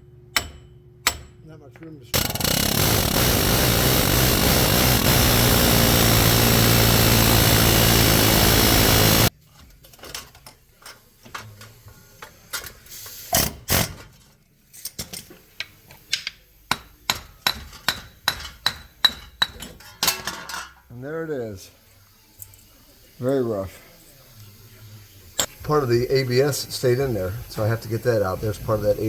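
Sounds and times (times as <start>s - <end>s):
power tool running: 2.2s - 9.3s.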